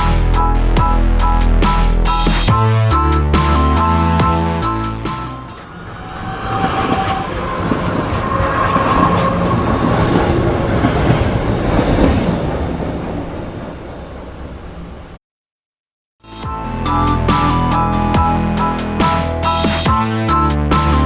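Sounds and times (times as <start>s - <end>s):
rumbling train-like sky noise: 3.5s - 15.2s
metallic screeching tones: 5.4s - 10.4s.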